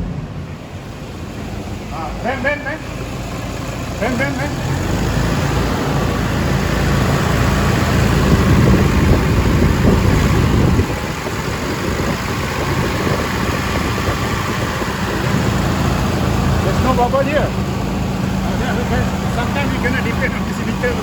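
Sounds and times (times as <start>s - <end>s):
car engine running: 0.0s - 21.0s.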